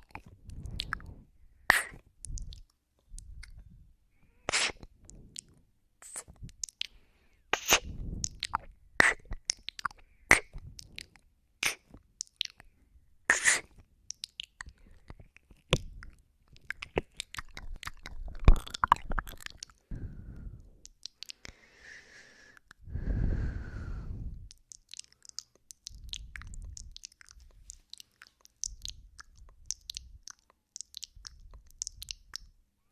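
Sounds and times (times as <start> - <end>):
wet kisses and lip smacks: 1.7 - 3.6, 4.5 - 12.6, 13.3 - 19.8, 20.8 - 21.5, 24.5 - 32.6
person breathing: 6.8 - 8.4, 19.8 - 20.8, 21.4 - 24.5.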